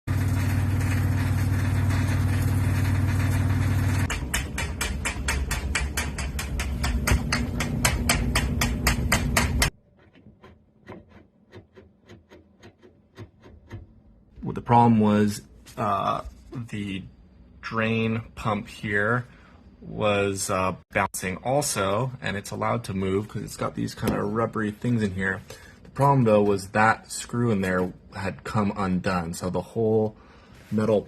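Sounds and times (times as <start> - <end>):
washing machine humming: 0.1 - 10.0
metal-on-metal clacking: 4.0 - 13.9.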